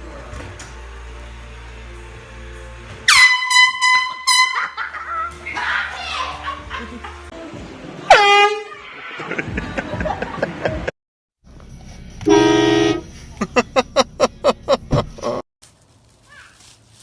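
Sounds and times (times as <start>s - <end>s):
air horn blasts: 3.1s - 4.8s, 8.1s - 8.7s, 12.2s - 13.1s.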